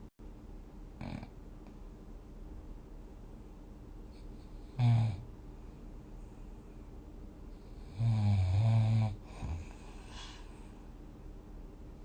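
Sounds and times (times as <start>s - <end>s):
person snoring: 4.8s - 5.2s, 7.8s - 10.4s.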